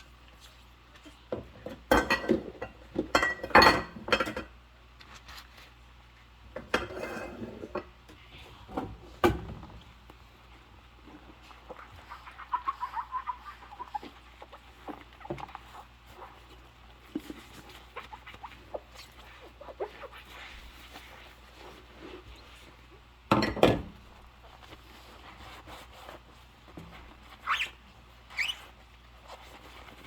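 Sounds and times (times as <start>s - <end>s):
dishes clicking and scraping: 1.3s - 4.6s, 6.5s - 8.0s
rubber gloves squeaking on dishes: 11.0s - 22.8s, 24.4s - 30.0s.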